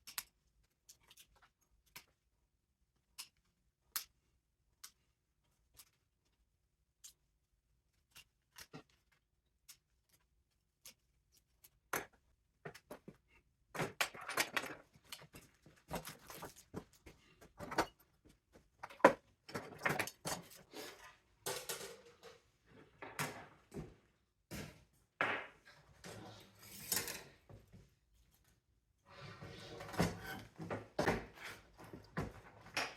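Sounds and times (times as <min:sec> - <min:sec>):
tools and metal parts clinking: 0:18.9 - 0:20.7.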